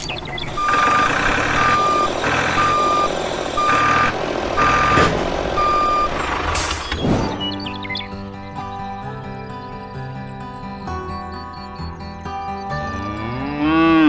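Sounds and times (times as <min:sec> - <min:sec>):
truck reversing alarm beeping: 0:00.0 - 0:08.0.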